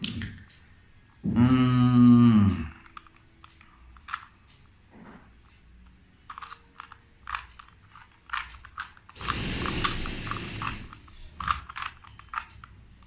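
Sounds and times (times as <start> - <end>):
puzzle cube clicking: 2.6 - 4.4, 6.2 - 13.0.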